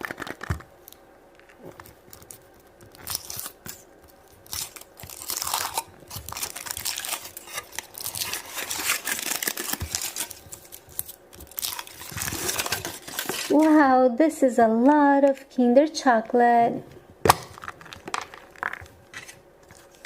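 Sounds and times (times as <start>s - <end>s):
foil wrapper crinkling: 0.0s - 1.0s, 1.8s - 13.9s, 17.3s - 20.0s.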